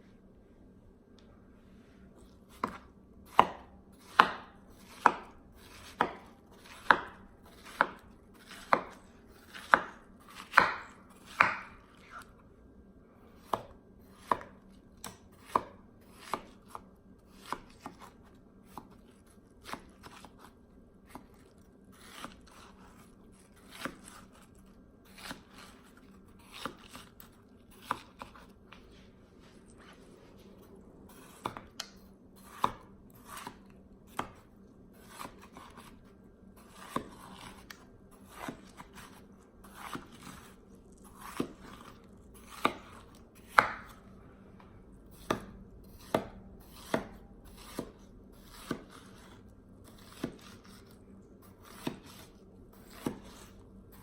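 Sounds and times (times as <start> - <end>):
knife chopping on cutting board: 2.5 - 12.2, 13.4 - 19.0, 22.0 - 23.0, 23.6 - 28.5, 31.1 - 34.4, 35.0 - 36.0, 36.6 - 44.0, 45.2 - 51.0, 51.6 - 54.0.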